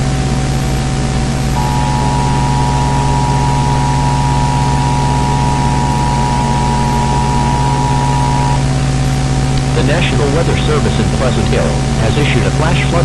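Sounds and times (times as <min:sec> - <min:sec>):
low hum: 0:01.6 - 0:08.6
two-tone attention signal: 0:01.6 - 0:08.6.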